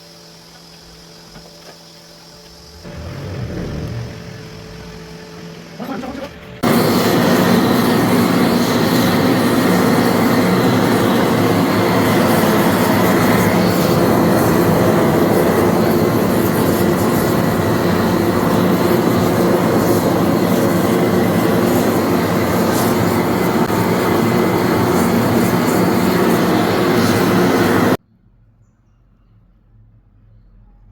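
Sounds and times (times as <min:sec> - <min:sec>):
welding arc hiss and buzz: 0:00.0 - 0:28.0.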